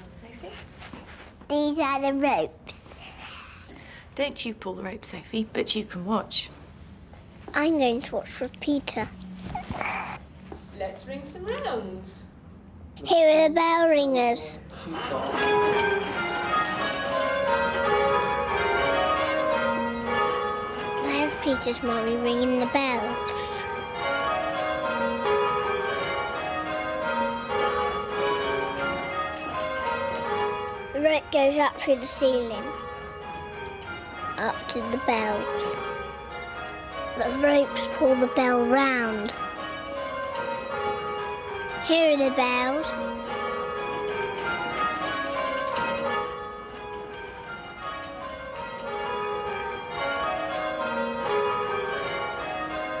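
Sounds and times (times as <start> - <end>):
church bells ringing: 13.1 - 53.0.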